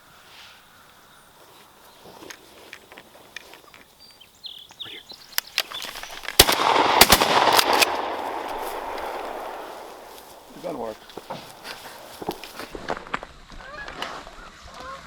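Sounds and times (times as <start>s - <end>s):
shotgun blasts: 6.0s - 10.9s.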